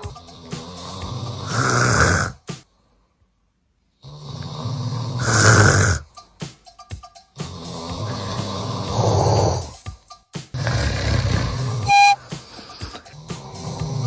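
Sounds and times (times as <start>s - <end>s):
man snoring loudly: 0.0s - 2.4s, 4.0s - 6.1s, 7.4s - 9.8s, 10.6s - 12.0s, 13.1s - 14.0s.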